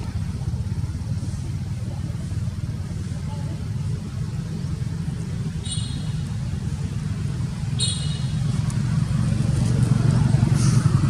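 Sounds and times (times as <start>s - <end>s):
vehicle engine rumbling: 0.0s - 11.0s.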